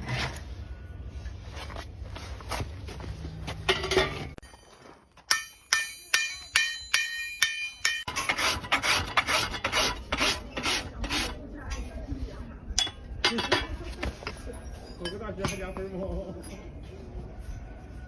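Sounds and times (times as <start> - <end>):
sharp ringing metal taps: 5.3 - 8.1
rasp filing a hoof: 8.0 - 11.4.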